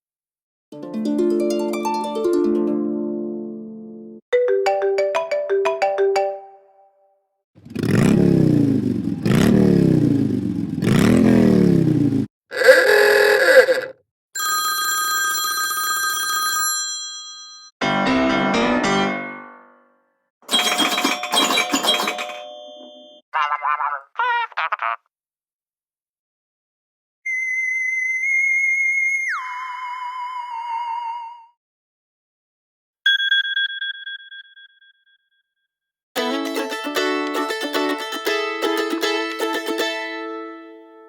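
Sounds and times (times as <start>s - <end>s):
piano-like notes: 17.8s - 19.8s
plucked-string tune: 36.2s - 41.0s.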